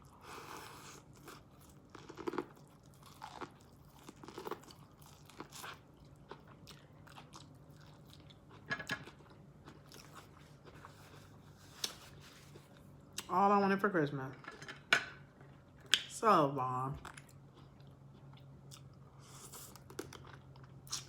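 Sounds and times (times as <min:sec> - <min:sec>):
person chewing and crunching: 0:00.0 - 0:12.0, 0:17.0 - 0:21.0.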